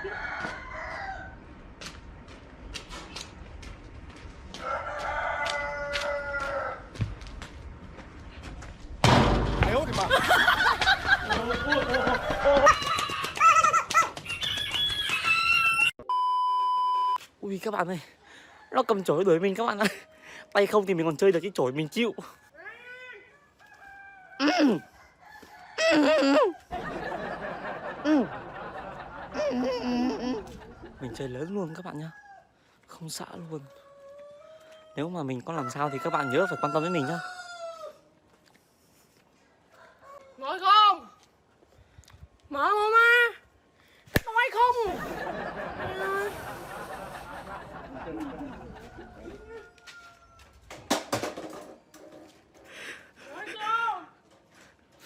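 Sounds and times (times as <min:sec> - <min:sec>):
rooster crowing: 0:00.0 - 0:01.4, 0:04.6 - 0:07.0, 0:14.4 - 0:16.0, 0:33.7 - 0:38.0, 0:39.7 - 0:40.5, 0:46.9 - 0:50.6.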